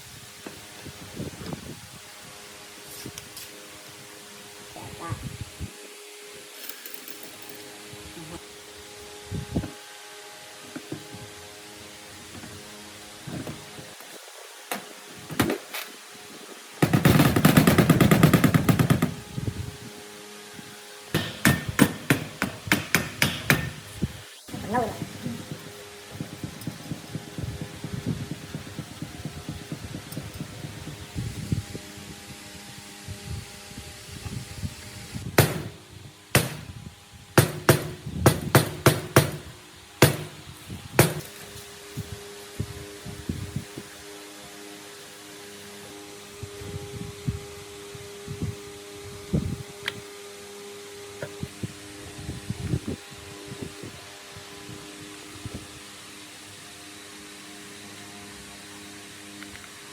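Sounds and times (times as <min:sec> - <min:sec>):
sharp knocks: 0:21.2 - 0:23.8, 0:35.4 - 0:36.7, 0:37.4 - 0:39.4, 0:40.0 - 0:40.4, 0:41.0 - 0:41.3
sharp hammer blows: 0:21.2 - 0:23.9, 0:40.0 - 0:40.4.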